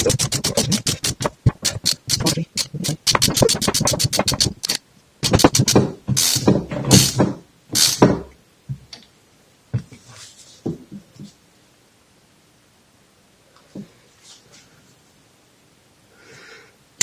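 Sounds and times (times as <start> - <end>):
rasping strokes: 0.0 - 6.3
ratchet clicks: 0.0 - 6.4.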